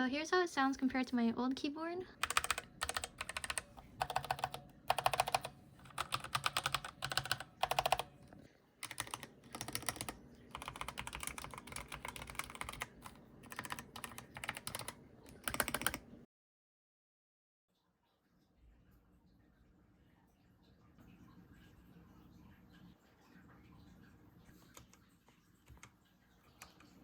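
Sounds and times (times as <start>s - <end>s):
mechanical keyboard typing: 2.1s - 16.1s.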